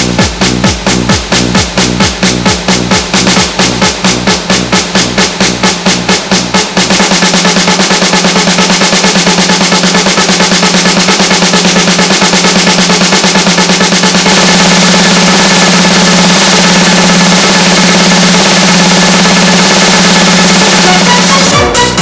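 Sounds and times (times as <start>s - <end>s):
drum beat: 0.0s - 22.0s
snare drum roll: 0.0s - 22.0s
low bass note: 20.7s - 22.0s.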